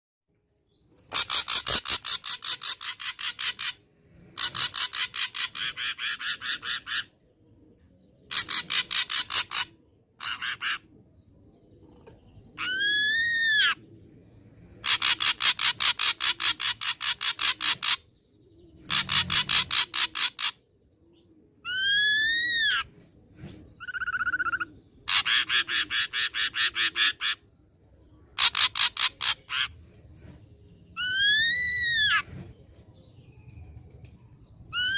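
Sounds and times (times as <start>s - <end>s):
bird harsh rasping song: 0.7s - 34.9s
bird arched whistle: 31.0s - 32.3s.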